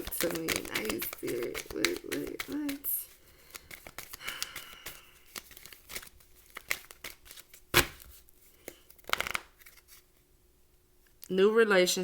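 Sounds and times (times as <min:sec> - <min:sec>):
cards clicking and rustling: 0:00.0 - 0:10.1.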